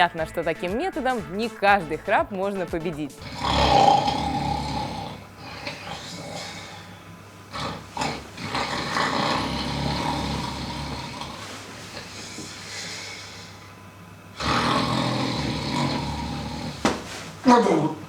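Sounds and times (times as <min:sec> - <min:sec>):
person snoring: 0:03.2 - 0:13.7, 0:14.3 - 0:17.9
quiet breath: 0:11.4 - 0:13.8.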